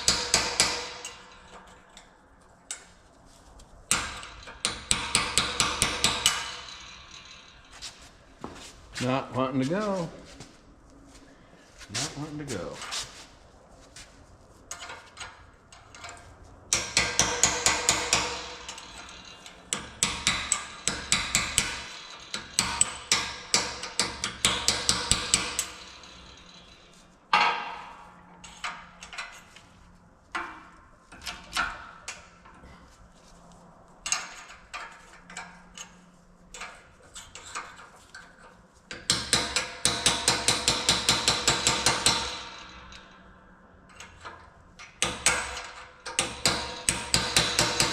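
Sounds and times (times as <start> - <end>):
hammer striking steel: 0.0 - 1.8, 3.9 - 7.7, 16.7 - 28.8, 38.9 - 43.2, 45.0 - 47.9.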